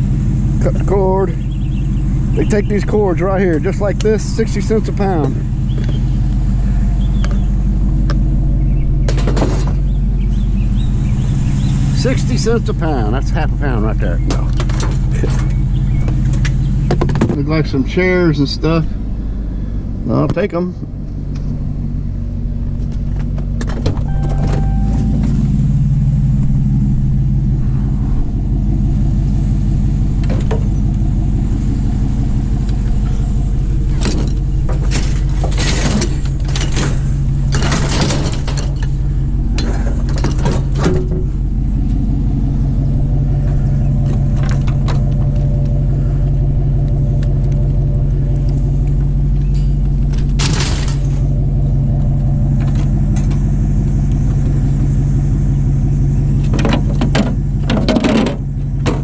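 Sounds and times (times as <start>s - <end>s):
vehicle engine idling: 0.0s - 59.0s
clattering and knocking: 9.0s - 9.9s, 14.2s - 17.5s, 33.9s - 41.4s, 49.0s - 51.4s, 56.4s - 59.0s.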